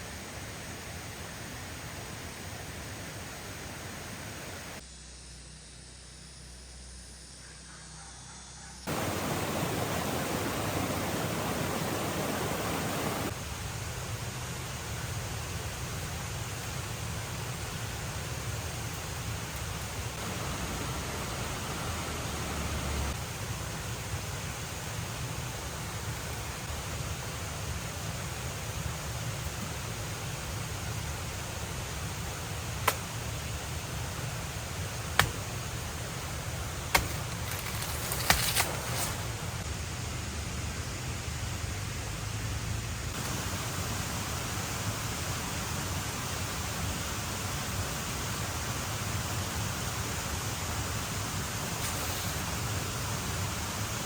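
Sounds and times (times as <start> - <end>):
rushing background noise: 8.9 - 16.0, 18.4 - 26.9.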